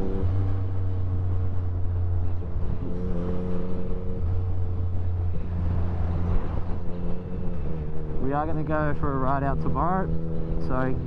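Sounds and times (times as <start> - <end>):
motorcycle engine cruising: 0.0 - 11.0
road and wind noise: 0.0 - 11.0.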